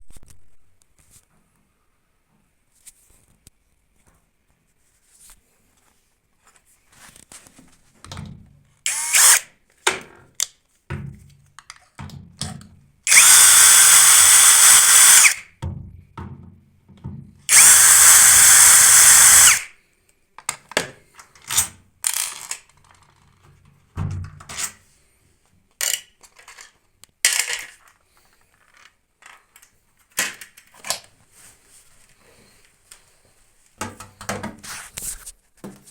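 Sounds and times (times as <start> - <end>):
power drill running: 8.9 - 9.4, 13.1 - 15.4, 17.5 - 19.7.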